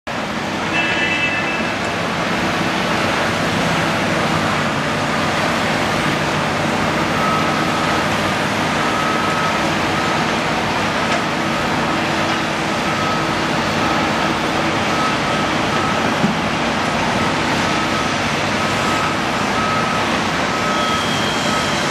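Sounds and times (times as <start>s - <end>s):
excavator diesel engine running: 0.1s - 21.9s
backup alarm beeping: 17.7s - 21.9s.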